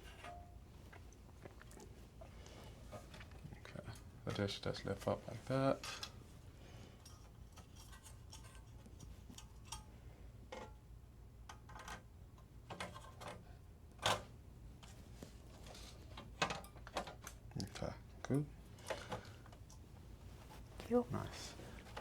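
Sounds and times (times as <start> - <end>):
low steady hum: 0.0 - 22.0.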